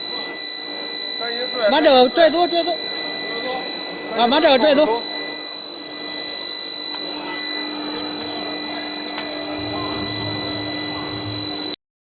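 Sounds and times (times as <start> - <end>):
induction furnace high-pitched whine: 0.0 - 11.8
low electrical hum: 9.2 - 11.6
low rumble: 9.6 - 11.6.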